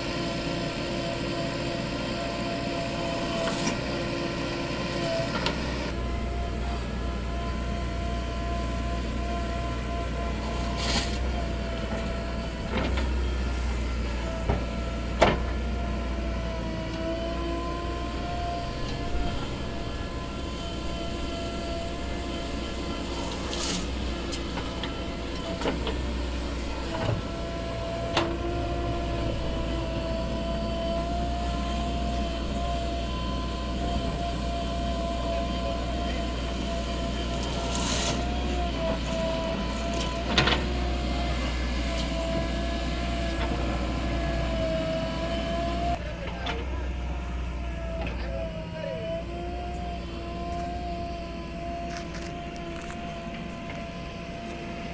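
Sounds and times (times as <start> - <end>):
diesel engine running with whine: 0.0 - 54.9.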